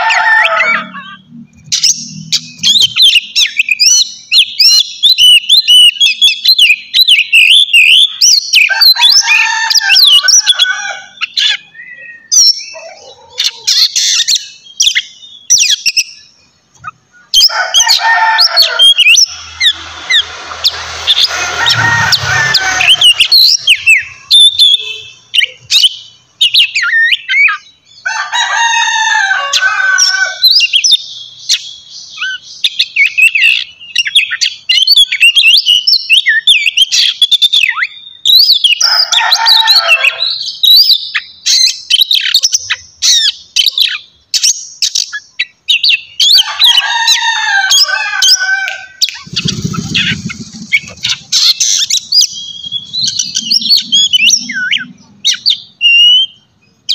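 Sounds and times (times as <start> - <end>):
harsh low bird calls: 0.0 - 27.8, 44.9 - 56.9
bird singing whistles and chirps: 1.0 - 9.4, 11.1 - 16.4, 18.5 - 27.7, 49.0 - 56.9
low rumble: 18.9 - 24.4, 49.2 - 55.9.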